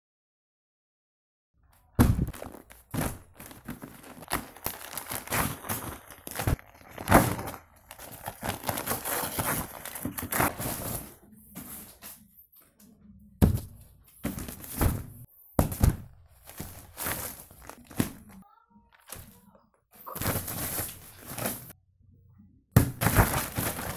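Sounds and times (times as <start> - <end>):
box thumping: 2.0 - 11.0, 13.4 - 18.3, 22.8 - 23.9
packaging crinkling and tearing: 2.3 - 10.7.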